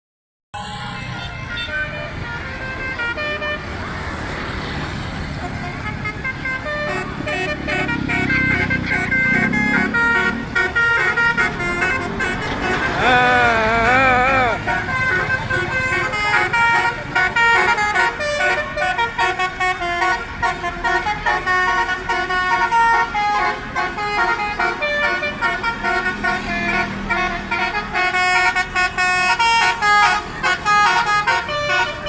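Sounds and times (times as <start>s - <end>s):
bus air horns playing melody: 0.6s - 3.9s, 5.3s - 32.0s.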